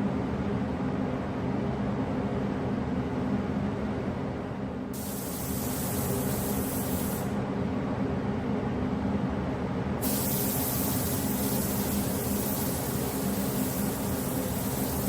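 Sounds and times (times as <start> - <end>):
steady machine hum: 0.0 - 15.0
compressed air hissing: 5.0 - 7.4, 10.0 - 15.0.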